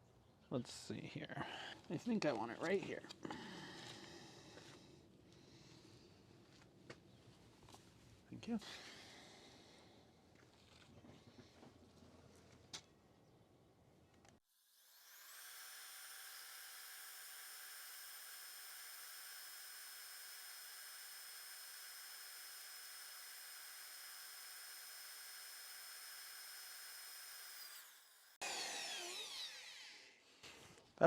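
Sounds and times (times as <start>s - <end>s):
cordless drill whining: 14.6s - 30.2s.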